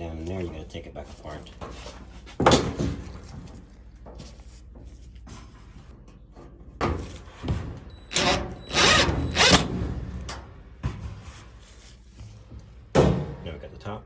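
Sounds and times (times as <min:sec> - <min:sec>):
power drill driving screws: 0:08.1 - 0:09.8.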